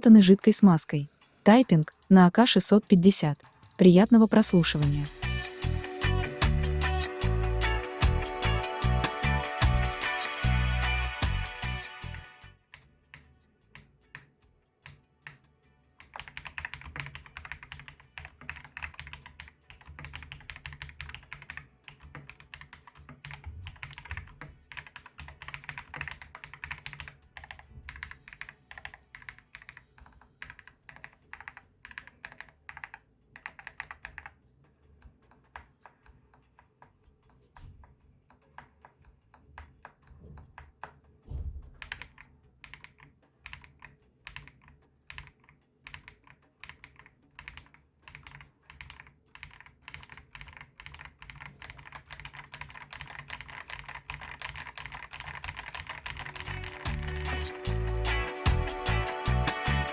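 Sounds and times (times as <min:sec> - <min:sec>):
mechanical keyboard typing: 0:00.0 - 0:00.8, 0:01.5 - 0:06.6, 0:16.0 - 0:34.4, 0:41.8 - 0:57.9.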